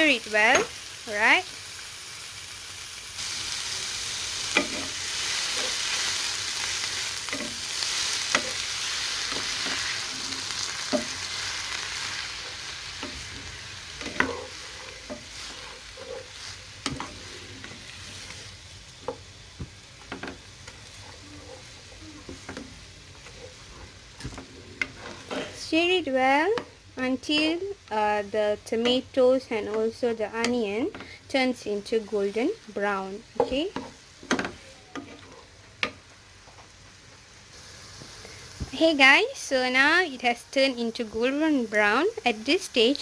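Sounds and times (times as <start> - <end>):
vegetables sizzling in oil: 0.0 - 43.0
utensil scraping a pan: 4.5 - 19.2, 20.1 - 25.6.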